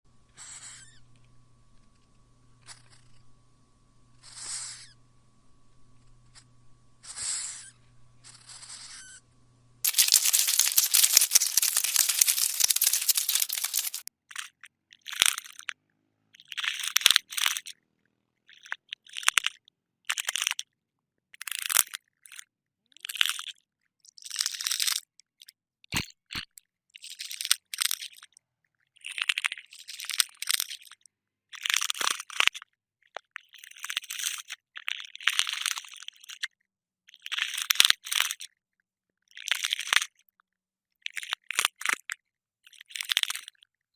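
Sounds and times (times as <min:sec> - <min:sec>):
cockroach wings crackling: 0:09.9 - 0:14.0.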